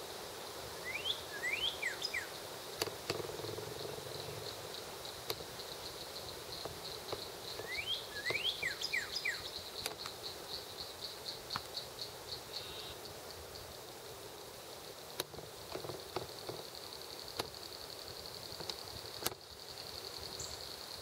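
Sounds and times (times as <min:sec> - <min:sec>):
insect chirping: 0:00.0 - 0:21.0
faint clicks: 0:09.8 - 0:10.2.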